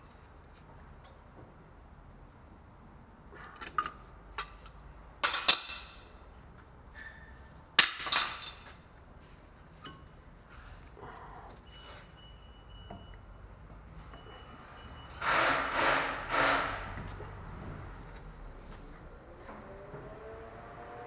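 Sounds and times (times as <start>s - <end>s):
metal parts and tools clinking: 3.7s - 6.2s, 7.8s - 8.8s.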